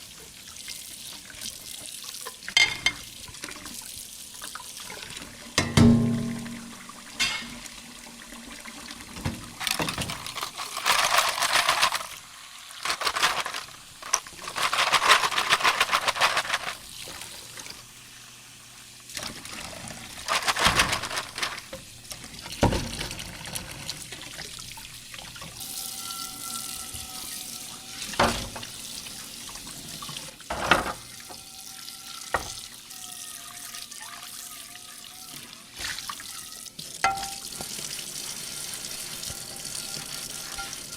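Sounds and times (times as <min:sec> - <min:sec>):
dishes clinking: 0:02.6 - 0:03.1, 0:05.6 - 0:07.6, 0:37.0 - 0:37.5, 0:39.3 - 0:40.9.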